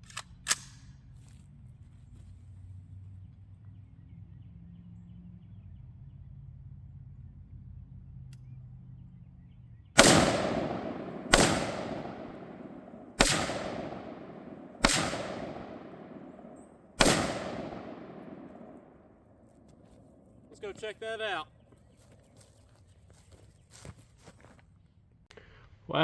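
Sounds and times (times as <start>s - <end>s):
rifle shots echoing: 10.0s - 19.2s.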